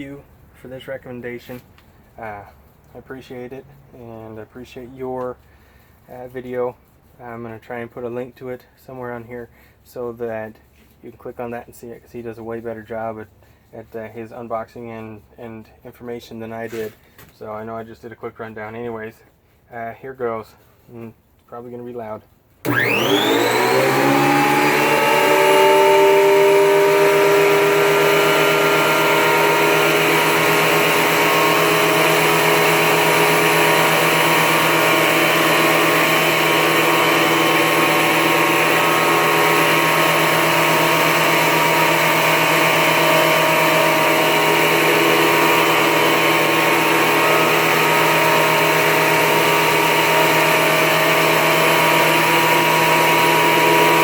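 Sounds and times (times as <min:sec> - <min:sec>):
planer motor whining: 0:22.6 - 0:54.0.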